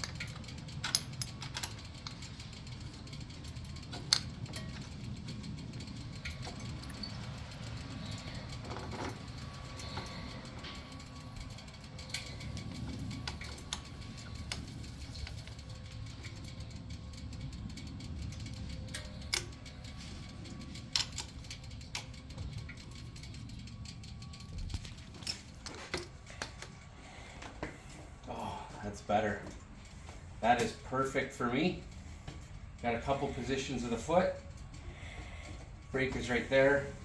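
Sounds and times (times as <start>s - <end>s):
metallic clicks of hand tools: 0.0s - 2.2s
low background rumble: 0.0s - 37.0s.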